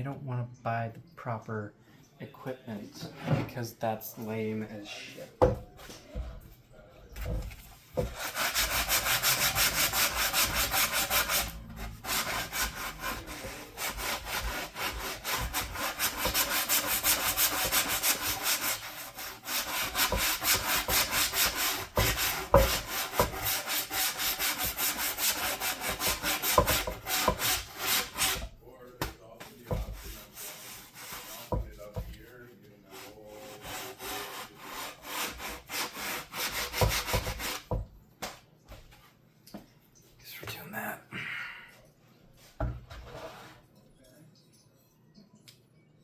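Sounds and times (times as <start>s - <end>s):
sandpaper rubbing back and forth: 8.0s - 28.4s, 29.6s - 31.6s, 32.9s - 37.6s.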